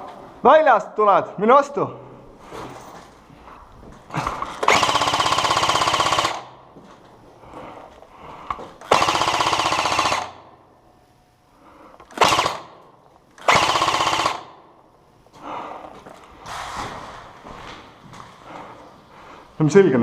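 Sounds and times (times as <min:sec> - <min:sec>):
airsoft rifle firing bursts: 0:04.4 - 0:06.6, 0:08.8 - 0:10.6, 0:12.1 - 0:12.8, 0:13.4 - 0:14.7.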